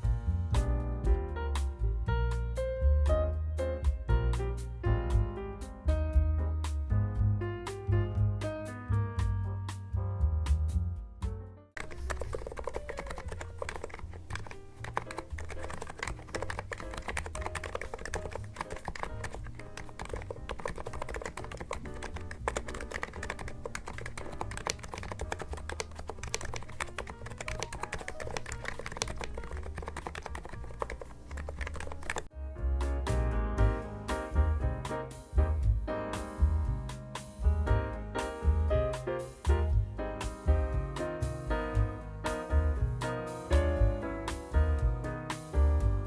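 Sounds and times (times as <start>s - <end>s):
fast keyboard typing: 11.8s - 32.3s.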